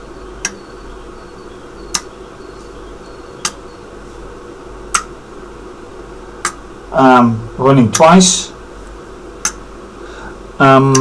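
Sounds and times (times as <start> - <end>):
low electrical hum: 0.0 - 11.0
relays clicking: 7.7 - 8.4, 10.6 - 11.0.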